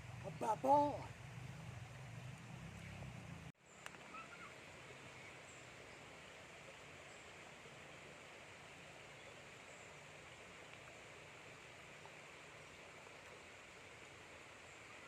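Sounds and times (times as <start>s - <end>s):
flowing river water: 0.0s - 15.0s
faint bird chirps: 3.6s - 7.4s.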